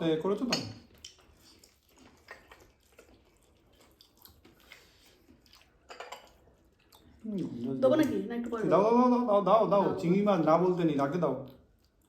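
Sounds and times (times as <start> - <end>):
chewing smacks: 0.9 - 8.2, 11.4 - 12.0.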